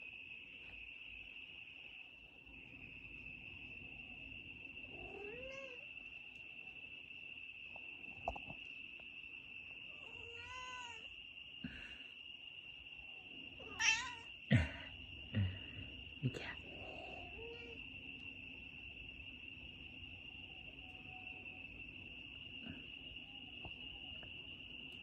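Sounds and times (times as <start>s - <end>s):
crickets chirring: 0.0s - 25.0s
cat meowing: 5.0s - 5.8s, 10.0s - 11.1s, 13.6s - 14.3s, 17.0s - 17.8s.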